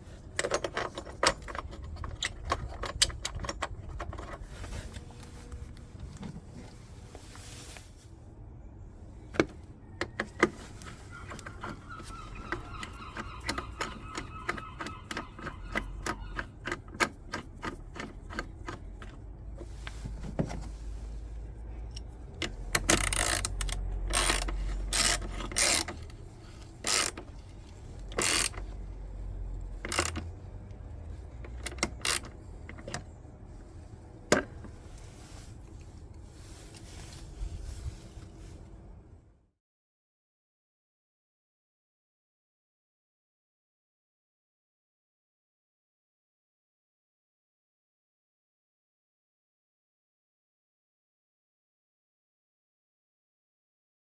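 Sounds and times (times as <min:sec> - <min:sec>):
ratchet rasping bursts: 0:22.8 - 0:26.0, 0:26.8 - 0:27.2, 0:28.1 - 0:28.6, 0:29.8 - 0:30.2
ratchet wrench clicking: 0:22.8 - 0:26.0, 0:26.9 - 0:27.2, 0:28.1 - 0:28.6, 0:29.9 - 0:30.3.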